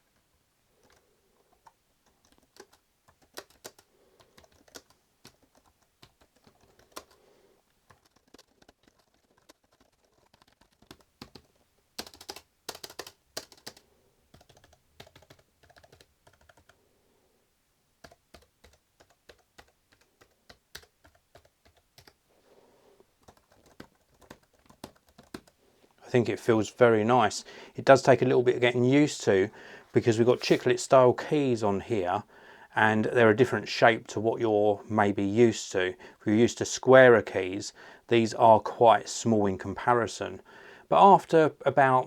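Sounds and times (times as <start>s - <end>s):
keyboard typing: 0.8s - 7.2s, 7.9s - 16.8s, 18.0s - 22.2s, 23.2s - 25.6s.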